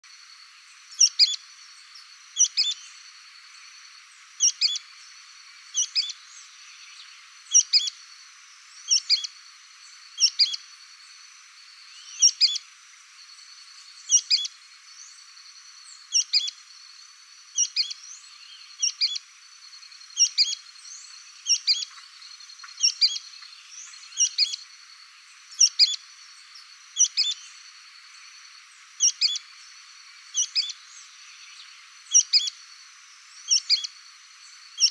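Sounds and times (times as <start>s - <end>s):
high insect buzz: 0.0s - 34.9s
bird singing two-part call: 10.2s - 10.6s, 17.6s - 18.0s, 30.4s - 30.8s.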